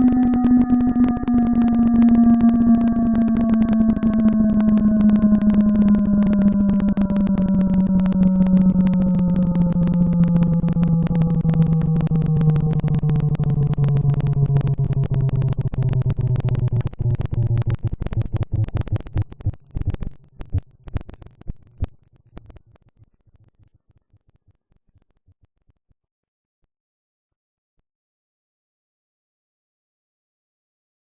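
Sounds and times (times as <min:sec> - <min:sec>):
siren winding down: 0:00.0 - 0:19.4
dense crackle: 0:00.0 - 0:25.5.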